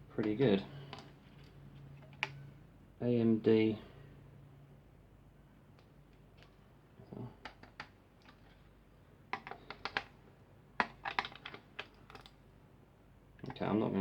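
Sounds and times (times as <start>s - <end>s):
clicks and taps of hard parts: 7.4s - 8.5s, 9.3s - 10.2s, 10.8s - 12.4s.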